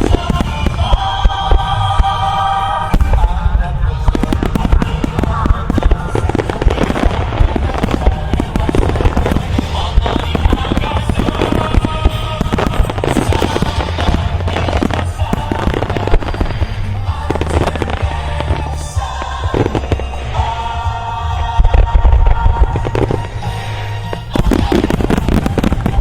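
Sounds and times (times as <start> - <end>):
fireworks bursting and crackling: 0.0 - 26.0
music playing: 0.0 - 26.0.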